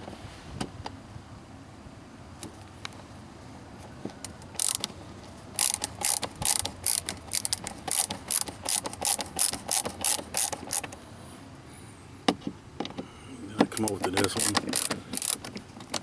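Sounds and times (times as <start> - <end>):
ratcheting screwdriver clicking: 4.6 - 4.9, 5.6 - 11.0, 13.8 - 15.6.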